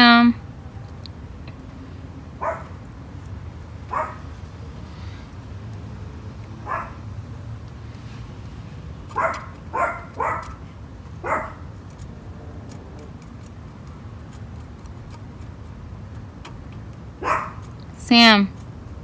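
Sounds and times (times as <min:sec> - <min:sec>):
low background hum: 0:00.0 - 0:19.0
dog barking: 0:02.4 - 0:02.8, 0:03.9 - 0:04.3, 0:06.6 - 0:07.1, 0:09.1 - 0:10.6, 0:11.2 - 0:11.6, 0:17.2 - 0:17.7.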